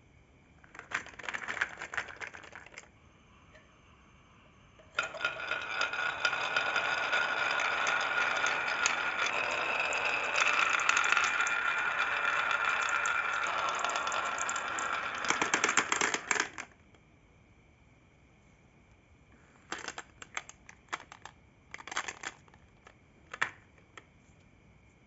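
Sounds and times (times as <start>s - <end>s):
marbles rolling and clattering: 0.7s - 2.9s, 4.9s - 16.8s, 19.7s - 23.8s
faint ringing tone: 2.8s - 15.8s.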